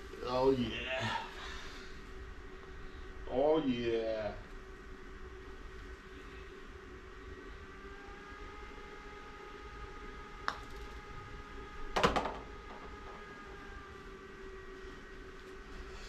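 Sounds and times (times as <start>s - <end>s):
steady room hum: 0.0s - 16.0s
golf ball rattling to a stop: 10.4s - 11.0s, 12.0s - 13.6s.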